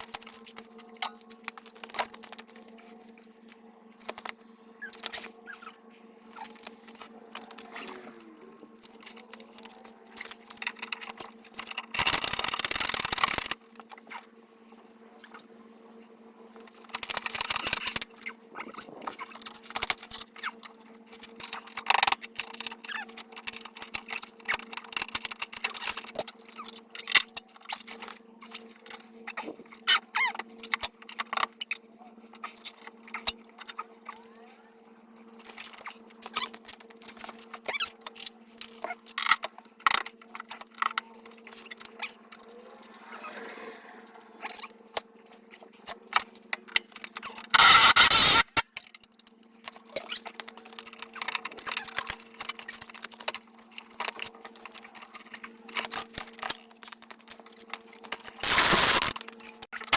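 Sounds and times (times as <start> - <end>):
tools and metal parts clicking: 0.0 - 2.7, 8.8 - 14.2, 16.7 - 31.8, 35.4 - 42.6, 48.8 - 59.9
steady low hum: 0.0 - 22.6, 39.4 - 47.6.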